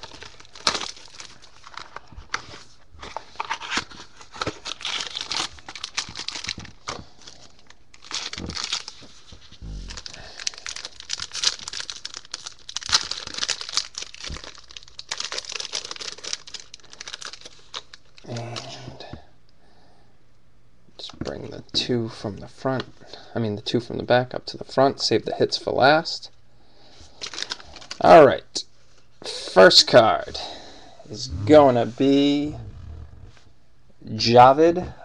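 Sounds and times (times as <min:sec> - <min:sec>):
wrapping tearing and crinkling: 0:00.0 - 0:18.7, 0:27.2 - 0:28.0.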